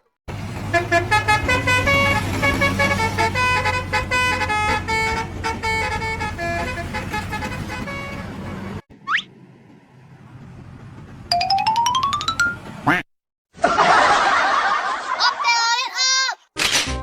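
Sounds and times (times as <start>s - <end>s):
bus horn playing a tune: 0.3s - 8.8s
engine running: 0.3s - 13.0s.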